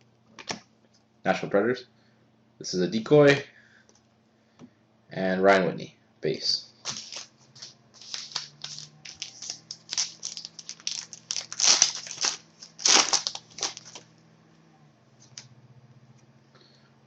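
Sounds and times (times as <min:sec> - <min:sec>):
wrapper crinkling and tearing: 0:06.8 - 0:14.1.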